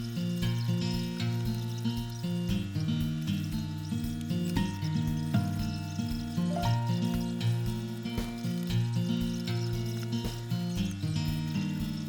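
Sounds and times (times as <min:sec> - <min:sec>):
melodic instrumental music: 0:04.6 - 0:08.6.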